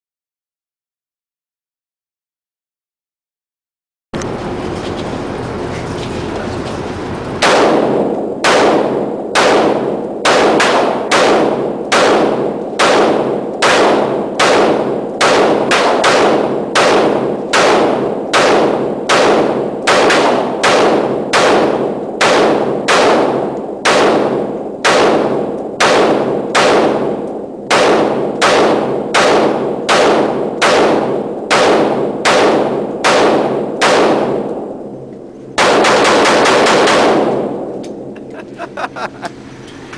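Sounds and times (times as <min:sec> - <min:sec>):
gunshots: 0:07.0 - 0:35.0, 0:35.6 - 0:38.3.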